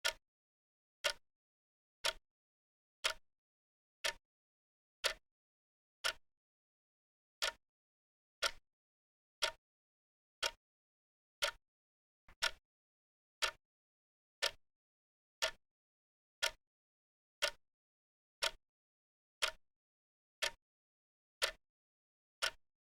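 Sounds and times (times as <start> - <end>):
clock ticking: 9.4 - 9.6, 11.4 - 11.6, 12.4 - 12.6, 13.4 - 13.6, 15.4 - 15.6, 19.4 - 19.6, 21.4 - 21.6.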